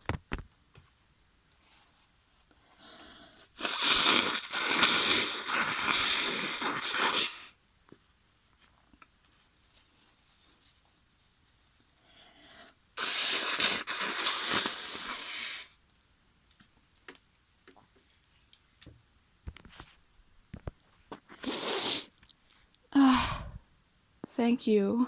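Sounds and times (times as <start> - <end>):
woman blowing her nose: 2.8 - 7.6, 13.0 - 15.8, 21.3 - 22.2.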